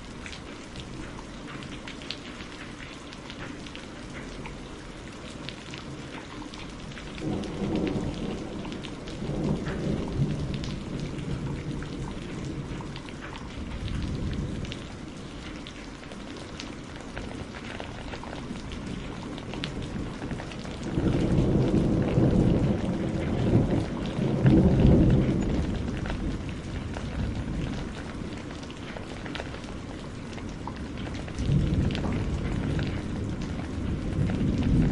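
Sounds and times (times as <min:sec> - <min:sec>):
steady rain hissing: 0:00.0 - 0:34.9
rolls of thunder: 0:07.2 - 0:12.9, 0:18.8 - 0:28.0, 0:31.4 - 0:34.9.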